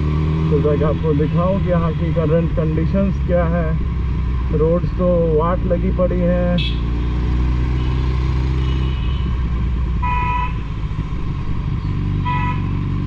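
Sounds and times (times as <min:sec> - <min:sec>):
motorcycle engine running: 0:00.0 - 0:13.0
street traffic: 0:00.0 - 0:13.0
vehicle horn beeps: 0:07.8 - 0:09.3, 0:10.0 - 0:10.6, 0:12.2 - 0:12.7.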